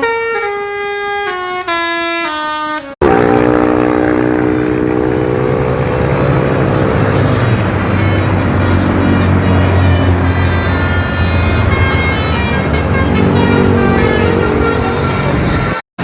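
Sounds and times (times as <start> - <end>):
multi-tone bus horn playing tune: 0.0 - 15.8
held chord over rumble: 3.0 - 15.8.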